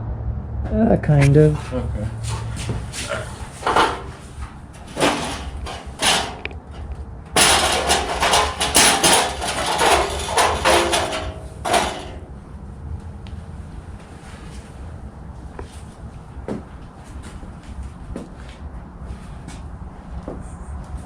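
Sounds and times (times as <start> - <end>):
sharp knocks and clanks: 1.2 - 12.3.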